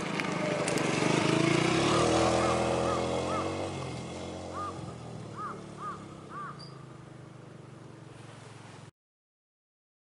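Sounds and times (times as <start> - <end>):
low engine hum: 0.0 - 8.9
crow cawing: 1.8 - 3.7, 4.5 - 6.8.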